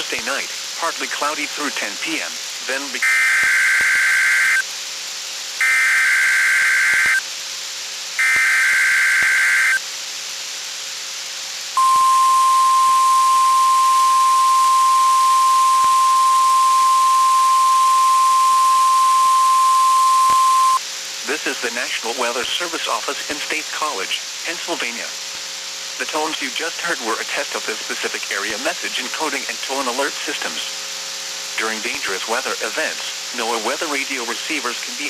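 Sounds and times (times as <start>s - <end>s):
buzzy data bursts: 5.6s - 7.2s, 8.2s - 9.8s, 11.7s - 20.8s
steady alert tone: 11.8s - 20.8s.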